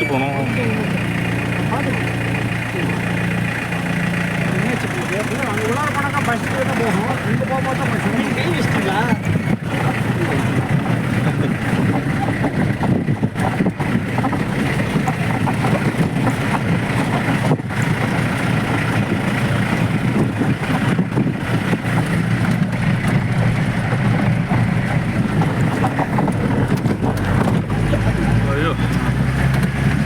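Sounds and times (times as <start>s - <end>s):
engine and road rumble: 0.0s - 30.0s
wind on microphone: 9.2s - 27.8s.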